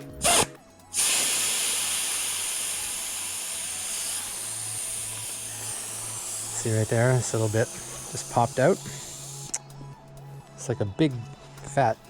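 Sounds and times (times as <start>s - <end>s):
air hissing from inner tube: 0.2s - 9.8s.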